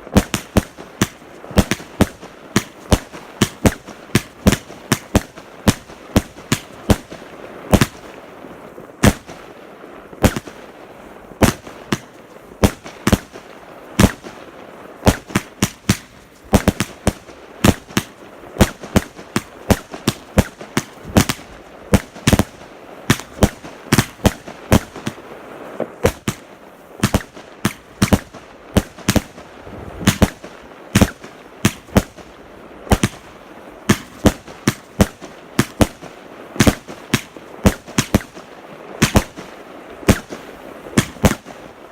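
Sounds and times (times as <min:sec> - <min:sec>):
fireworks bangs and crackles: 0:00.0 - 0:41.9.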